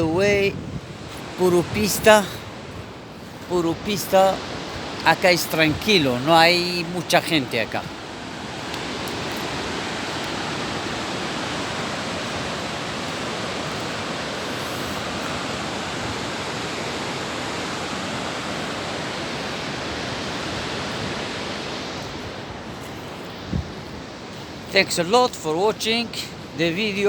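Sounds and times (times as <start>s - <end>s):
water rushing: 0.0s - 27.0s.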